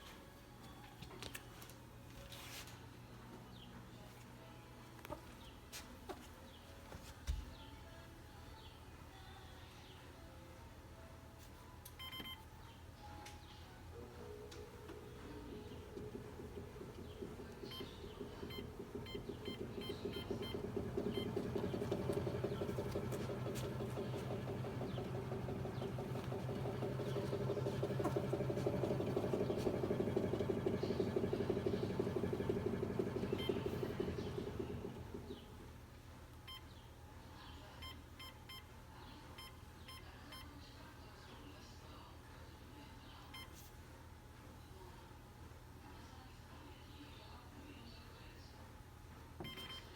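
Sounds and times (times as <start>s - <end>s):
faint electronic beeps: 12.0s - 35.6s, 49.4s - 49.9s
treadmill motor pulsing hum: 14.2s - 35.8s, 49.4s - 49.9s.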